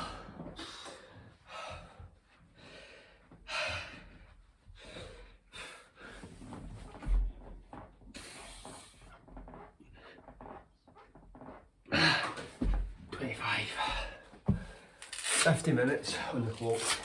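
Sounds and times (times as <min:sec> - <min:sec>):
man breathing heavily: 0:00.0 - 0:07.0, 0:11.9 - 0:15.1
body thumping on floor: 0:12.5 - 0:13.1, 0:13.9 - 0:14.8.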